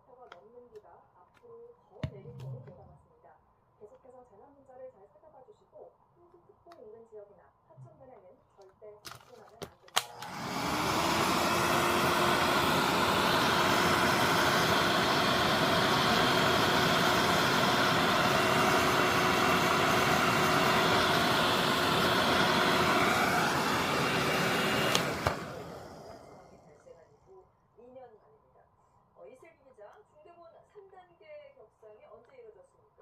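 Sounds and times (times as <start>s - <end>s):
hair dryer switch click: 9.9s - 10.7s, 22.8s - 26.2s
hair dryer whirring: 9.9s - 26.8s.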